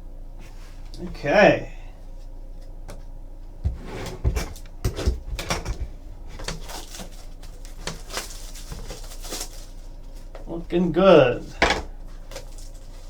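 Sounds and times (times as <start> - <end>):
card and wrapper crackle: 6.7 - 10.3.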